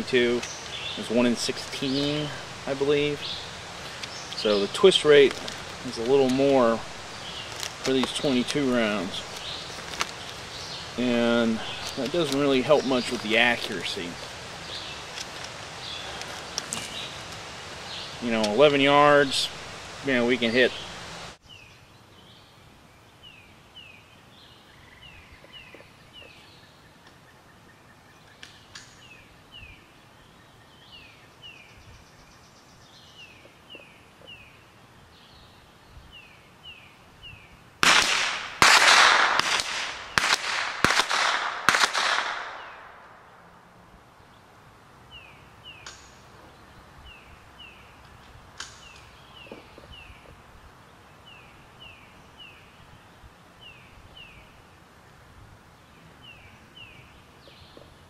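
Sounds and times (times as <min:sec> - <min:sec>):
rifle shots echoing: 0:37.8 - 0:43.2.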